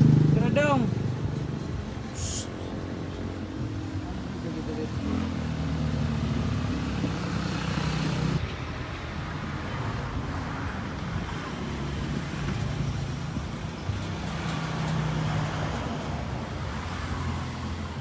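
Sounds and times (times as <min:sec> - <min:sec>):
car engine humming: 0:00.0 - 0:08.4
high hiss: 0:02.1 - 0:02.5.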